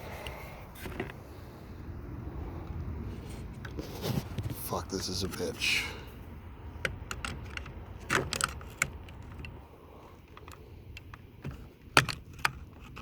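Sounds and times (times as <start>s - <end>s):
plastic clicks and scrapes: 10.2s - 13.0s.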